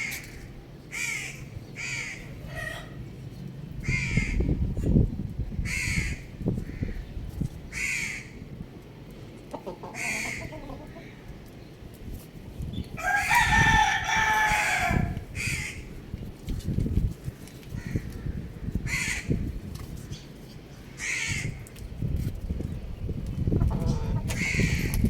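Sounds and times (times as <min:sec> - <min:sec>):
young rooster crowing: 0:13.0 - 0:15.3.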